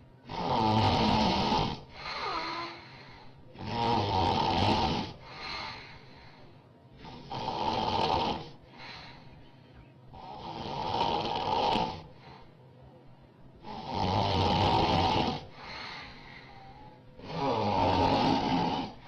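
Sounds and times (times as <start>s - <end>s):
woman snoring loudly: 0.2s - 3.0s, 3.6s - 5.9s, 7.0s - 9.0s, 10.2s - 12.2s, 13.6s - 19.0s
soft breath: 1.8s - 3.6s, 5.1s - 7.3s, 8.5s - 10.4s, 12.0s - 13.5s, 15.4s - 19.0s.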